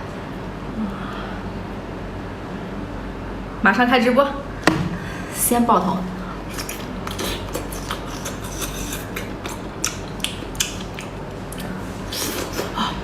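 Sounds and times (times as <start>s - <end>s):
low steady hum: 0.0s - 13.0s
chewing mouth clicks: 6.5s - 12.8s.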